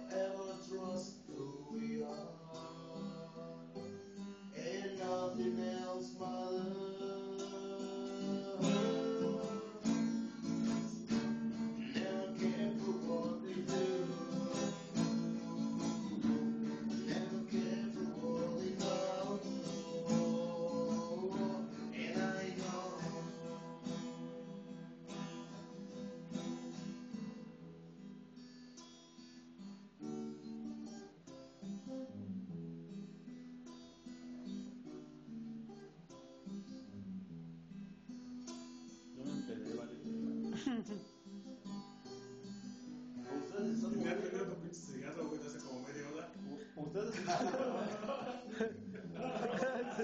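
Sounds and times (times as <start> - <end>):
person singing: 0.0 - 3.9, 4.5 - 27.1
acoustic guitar strumming: 0.0 - 50.0.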